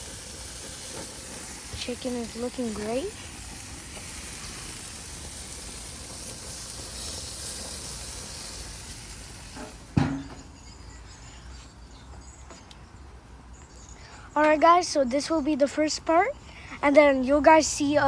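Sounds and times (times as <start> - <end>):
chicken sizzling on a grill: 0.0 - 10.4
sharp thump: 9.6 - 10.5.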